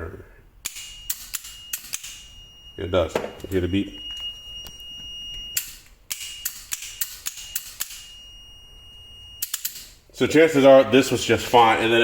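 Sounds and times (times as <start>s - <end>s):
multimeter continuity beep: 0.8s - 9.8s
sharp clicks: 5.6s - 8.0s.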